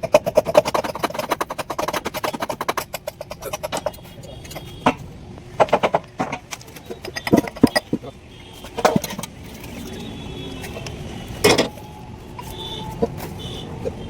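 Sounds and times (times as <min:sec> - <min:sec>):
rapid metallic clicking: 0:00.0 - 0:05.0.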